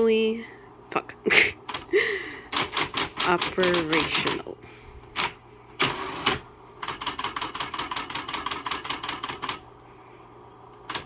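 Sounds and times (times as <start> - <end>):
electric typewriter typing: 1.6 - 1.9, 2.5 - 4.5, 5.1 - 9.7
typewriter motor humming: 1.6 - 4.5, 5.1 - 9.7.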